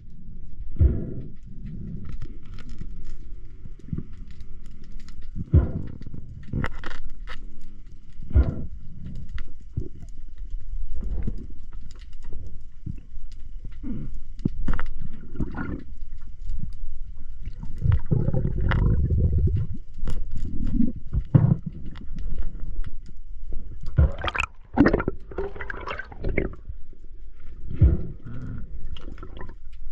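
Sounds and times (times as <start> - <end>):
heavy breathing through a snorkel: 0.7 - 2.4, 5.4 - 6.4, 8.2 - 9.3, 27.6 - 29.3
water sloshing: 23.9 - 26.8.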